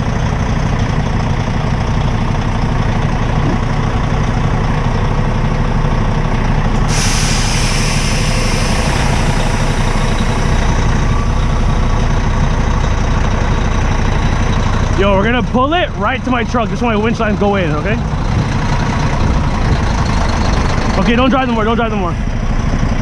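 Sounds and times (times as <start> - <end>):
heavy diesel truck engines: 0.0 - 23.0
sharp hiss: 6.8 - 11.3.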